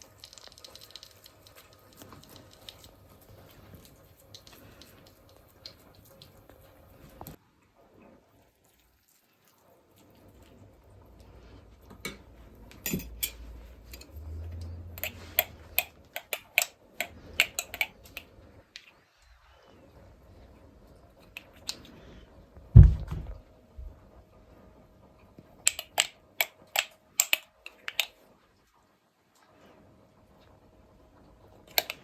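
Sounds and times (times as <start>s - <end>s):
low heavy thump: 22.8s - 23.4s
sharp clicks and taps: 25.7s - 28.1s, 31.7s - 32.0s.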